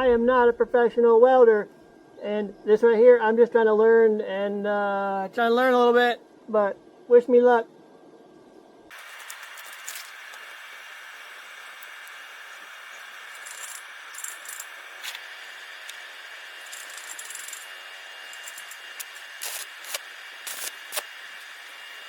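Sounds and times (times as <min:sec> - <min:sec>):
steady hiss: 0:08.9 - 0:22.0
metal tube clinking and rattling: 0:13.4 - 0:14.8, 0:16.6 - 0:17.7, 0:18.3 - 0:19.6.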